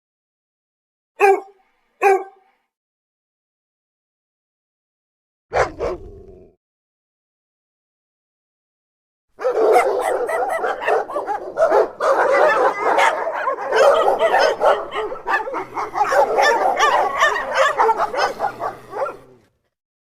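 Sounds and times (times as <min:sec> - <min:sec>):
dog barking and yipping: 0:01.2 - 0:02.6, 0:05.5 - 0:06.0, 0:09.4 - 0:19.4.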